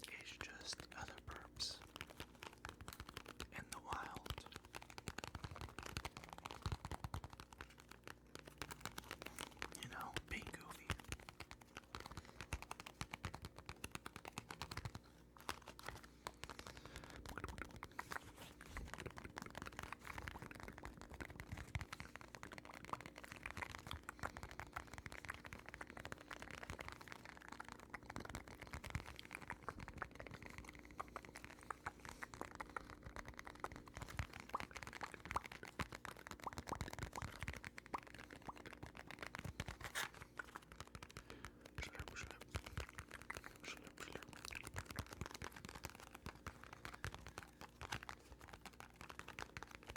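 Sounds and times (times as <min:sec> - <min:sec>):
soft clicks and taps near microphone: 0:00.0 - 0:49.9.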